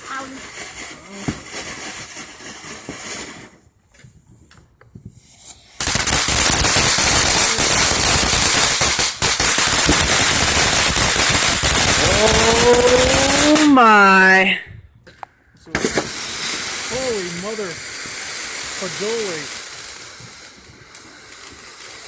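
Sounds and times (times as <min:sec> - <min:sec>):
firework pops: 0:00.0 - 0:13.9, 0:15.1 - 0:17.2
fireworks crackling: 0:00.0 - 0:14.6, 0:15.6 - 0:22.0.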